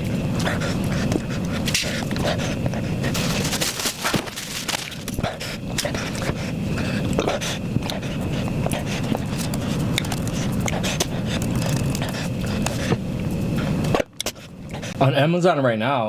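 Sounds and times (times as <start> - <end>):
person panting through mouth: 5.2 - 15.0.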